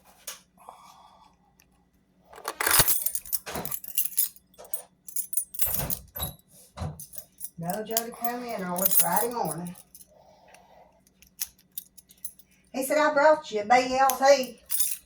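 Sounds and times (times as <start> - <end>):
lock pick scraping and clicking: 2.3 - 4.8
metallic jingling: 2.4 - 6.4, 7.0 - 10.1, 11.2 - 12.7, 14.1 - 15.0.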